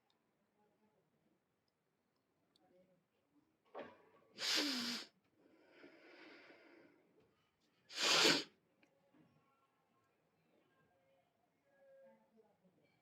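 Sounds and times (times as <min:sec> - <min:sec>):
breath drawn in: 0:04.4 - 0:05.1, 0:07.9 - 0:08.5
person sneezing: 0:04.4 - 0:05.1, 0:07.9 - 0:08.5.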